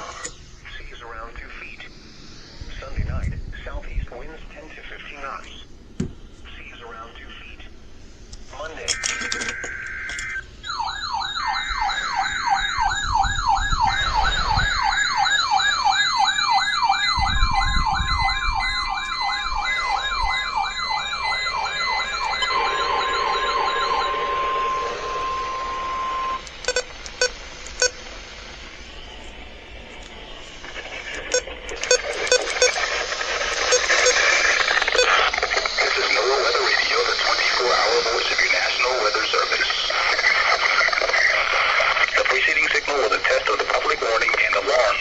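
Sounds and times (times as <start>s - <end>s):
low hiss: 0.0s - 8.8s
steady high beep tone: 0.2s - 4.9s, 8.8s - 28.0s, 31.1s - 40.0s
electronic siren wailing: 8.8s - 41.4s.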